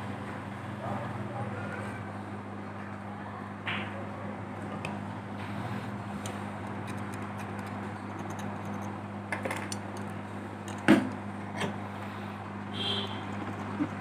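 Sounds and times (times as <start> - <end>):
low electrical hum: 0.0 - 14.0
small tools clicking and tapping: 6.2 - 11.2.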